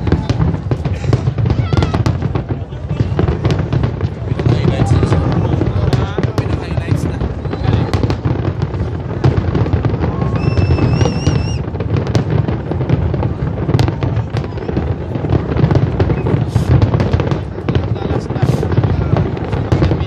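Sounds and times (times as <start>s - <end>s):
fireworks cracking and banging: 0.0s - 20.0s
warbling firework whistle: 9.6s - 11.7s.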